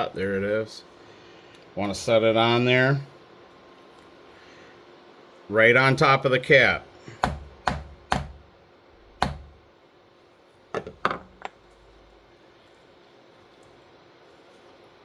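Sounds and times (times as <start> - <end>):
hammer blows on rivet setter: 7.1 - 8.5, 9.2 - 9.6.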